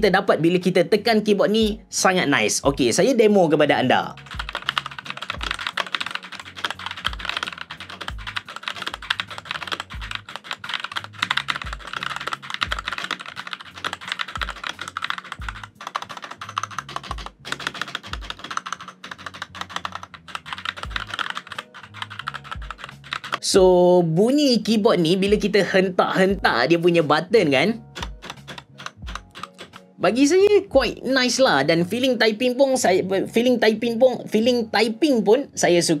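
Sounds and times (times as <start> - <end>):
mechanical keyboard typing: 4.1 - 23.5, 27.9 - 29.9.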